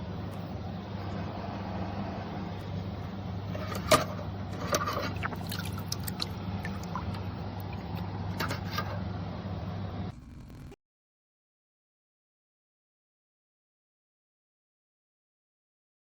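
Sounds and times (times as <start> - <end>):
small electric pump humming: 0.0 - 10.8
water trickling: 4.8 - 8.1.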